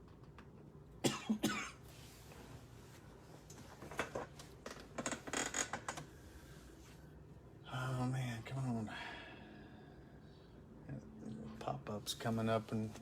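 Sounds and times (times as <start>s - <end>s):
man coughing: 1.0s - 1.8s.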